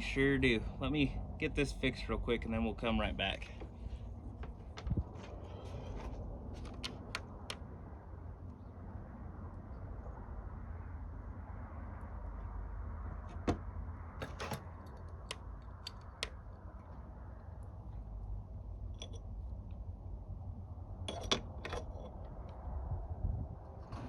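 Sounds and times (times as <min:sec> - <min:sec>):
steady low rumble: 0:00.0 - 0:24.0
metal parts and tools clinking: 0:14.2 - 0:15.1, 0:18.9 - 0:19.3, 0:21.1 - 0:22.2.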